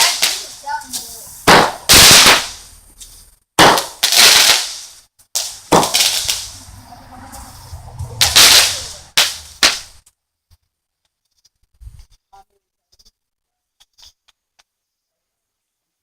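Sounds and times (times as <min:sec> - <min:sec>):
fireworks bangs: 0:00.0 - 0:10.1.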